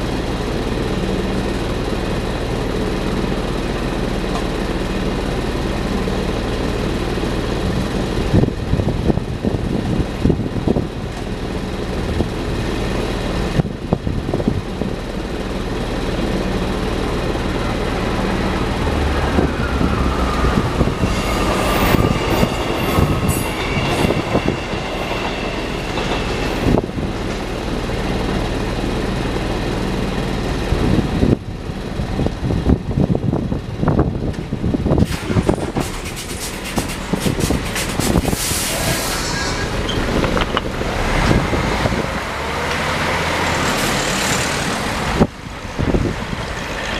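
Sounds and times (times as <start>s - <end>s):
train rumbling: 0.0s - 46.9s
high wheel squeal: 19.2s - 27.2s, 35.4s - 42.1s
wheels knocking over rail joints: 39.7s - 41.4s.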